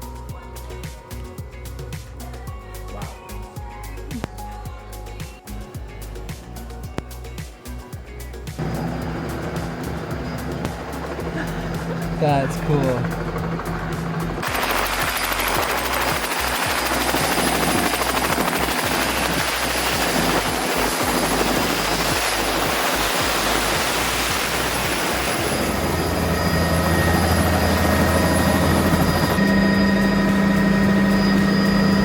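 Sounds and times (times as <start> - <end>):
helicopter rotor and engine: 8.6 - 32.0.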